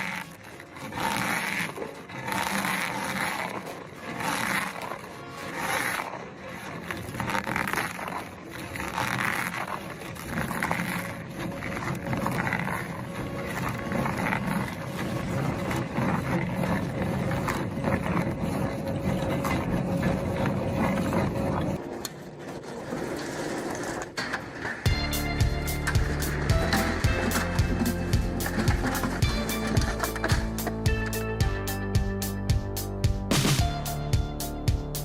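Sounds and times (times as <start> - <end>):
shredding machine grinding: 0.0 - 31.2
heavy rumble: 24.9 - 31.0.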